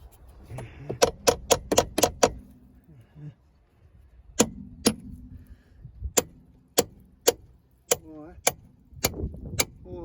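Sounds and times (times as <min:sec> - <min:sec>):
hammer striking metal: 0:04.4 - 0:05.2.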